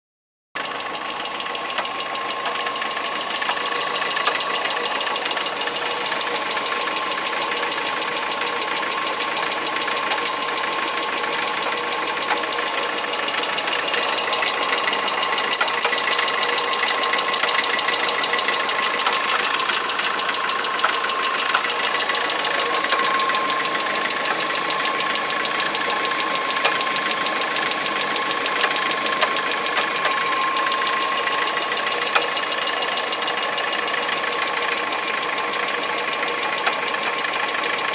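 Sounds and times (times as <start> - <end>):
car engine running: 0.6 - 37.9
steady whine: 16.8 - 33.4.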